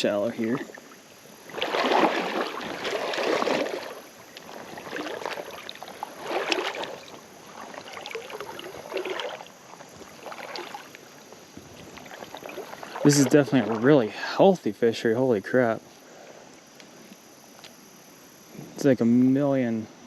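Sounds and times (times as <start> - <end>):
water sloshing from wading: 0.0 - 14.5.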